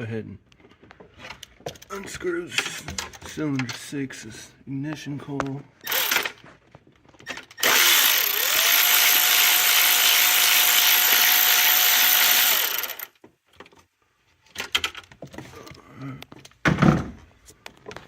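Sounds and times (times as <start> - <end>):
power tool motor spinning: 5.8 - 6.4, 7.5 - 13.2.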